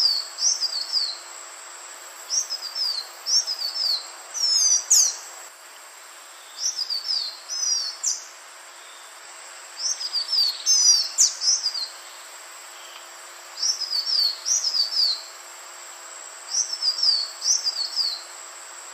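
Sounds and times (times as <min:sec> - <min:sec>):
bird singing whistled notes: 0:00.0 - 0:01.3, 0:02.3 - 0:05.3, 0:06.4 - 0:09.1, 0:09.8 - 0:12.2, 0:13.6 - 0:15.3, 0:16.5 - 0:18.3.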